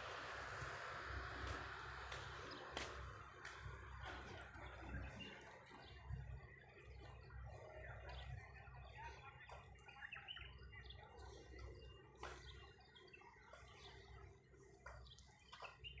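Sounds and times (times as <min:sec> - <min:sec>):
faint birds chirping: 0:00.0 - 0:16.0.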